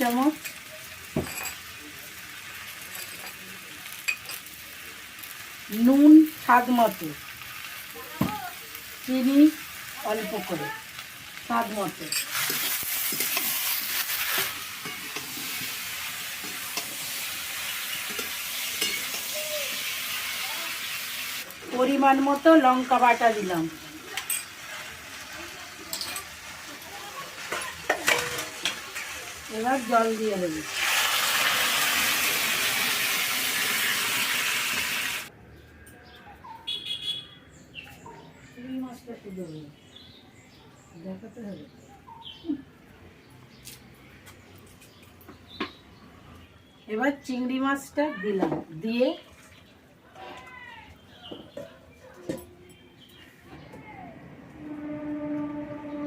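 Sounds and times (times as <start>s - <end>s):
vegetables sizzling in hot oil: 0.0s - 35.3s
spatula scraping a pan: 12.1s - 19.3s
bird chirping: 35.5s - 42.6s.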